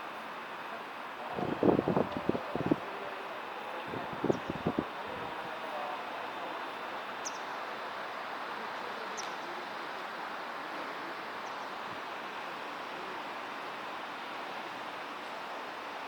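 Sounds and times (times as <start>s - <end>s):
standing electric train noise: 0.0s - 16.0s
faint bird chirps: 7.2s - 7.6s.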